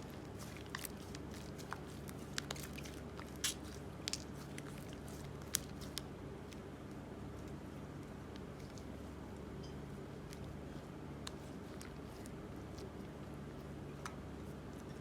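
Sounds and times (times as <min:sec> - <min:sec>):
chalk crackling in slime: 0:00.0 - 0:06.1.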